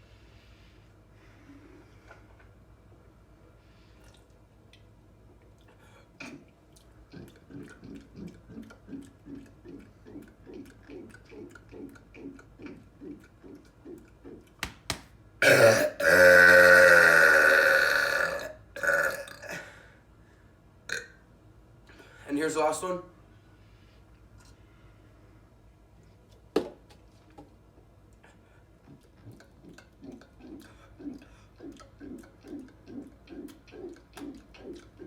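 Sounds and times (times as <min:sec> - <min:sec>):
soft gulps of drinking: 0:03.8 - 0:14.6, 0:23.4 - 0:26.4, 0:27.1 - 0:35.0
long loud burp: 0:15.4 - 0:19.7.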